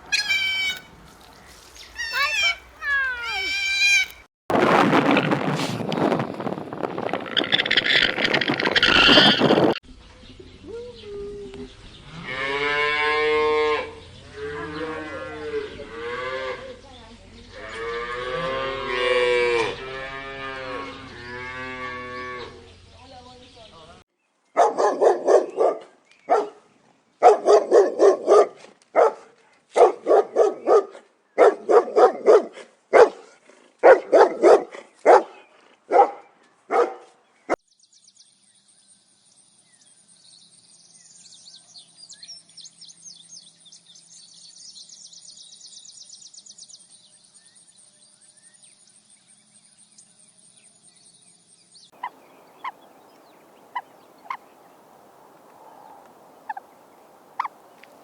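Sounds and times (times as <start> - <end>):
dog barking: 24.6 - 26.6, 27.2 - 37.2.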